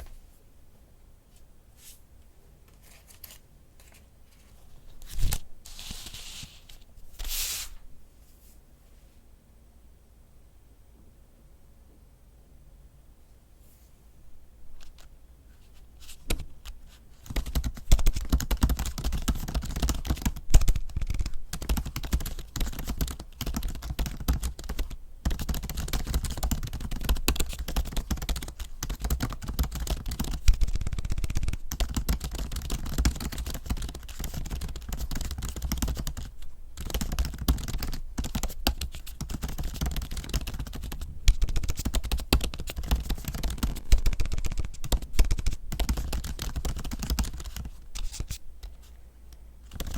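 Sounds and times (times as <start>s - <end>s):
fast laptop keyboard typing: 16.3s - 48.7s, 49.6s - 49.9s.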